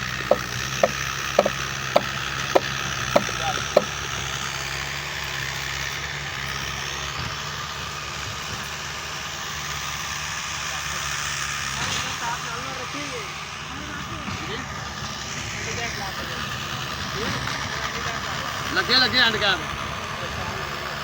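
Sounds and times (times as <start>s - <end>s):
motor running: 0.0s - 4.2s
short sharp taps: 0.3s - 3.9s.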